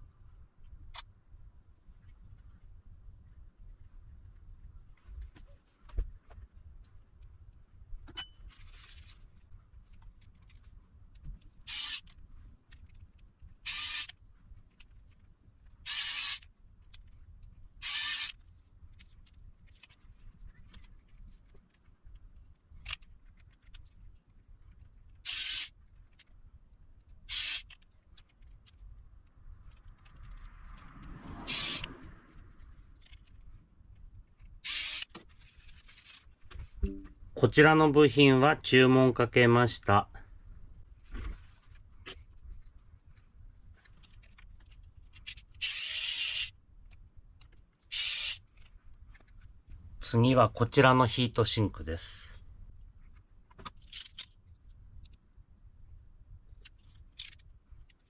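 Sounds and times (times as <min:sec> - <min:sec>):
rustling: 0:08.4 - 0:13.6, 0:32.3 - 0:36.8.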